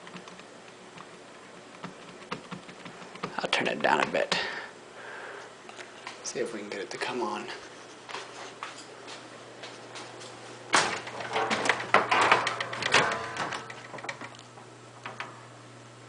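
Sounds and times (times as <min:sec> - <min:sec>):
clicking and rattling: 0:00.0 - 0:04.2, 0:10.7 - 0:15.3
steady low hum: 0:00.0 - 0:16.0.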